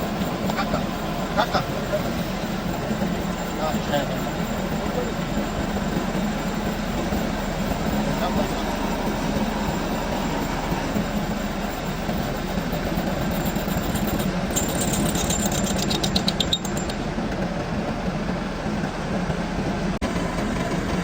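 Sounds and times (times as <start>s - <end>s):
metal lathe humming: 0.0s - 17.8s
light rapid ticks: 11.0s - 17.1s.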